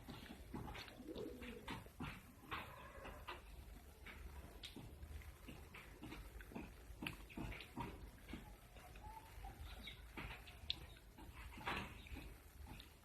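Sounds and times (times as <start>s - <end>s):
bird cooing softly: 0.6s - 3.4s.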